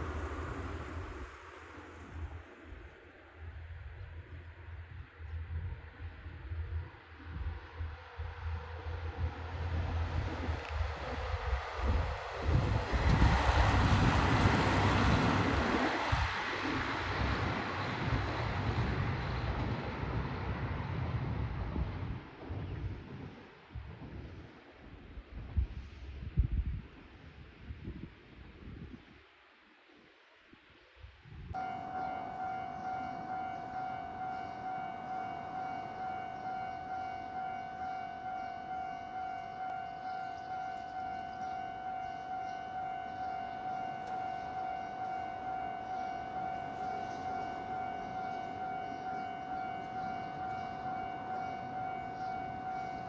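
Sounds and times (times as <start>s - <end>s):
train wheels on rails: 0.0s - 24.8s
diesel train passing: 0.0s - 25.4s, 31.6s - 53.0s
level crossing alarm ringing: 31.6s - 53.0s.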